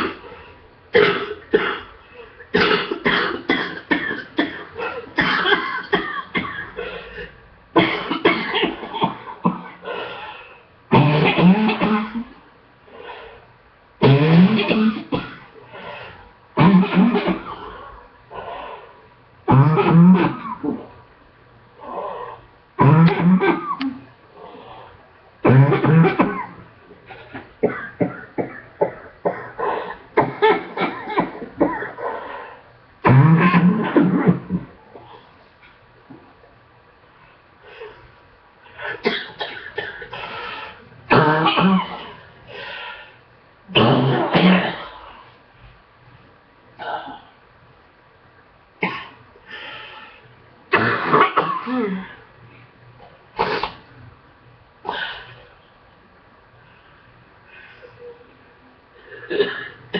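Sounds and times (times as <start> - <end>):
woman coughing: 0.0 - 0.3, 0.9 - 9.8, 10.9 - 12.4, 16.6 - 17.8, 19.5 - 20.9, 22.8 - 24.1, 25.5 - 32.2, 33.1 - 34.7, 38.8 - 40.3, 41.1 - 42.2, 43.8 - 45.0, 48.8 - 49.2, 50.7 - 52.2, 59.0 - 59.9.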